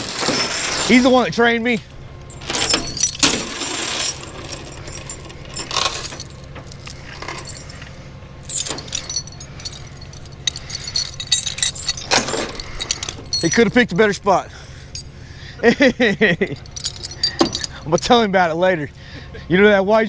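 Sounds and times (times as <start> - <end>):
low engine hum: 1.1 - 20.0
metallic jingling and clinking: 2.2 - 15.2, 16.2 - 18.2
sharp metal clanks: 2.3 - 13.8, 16.5 - 18.2.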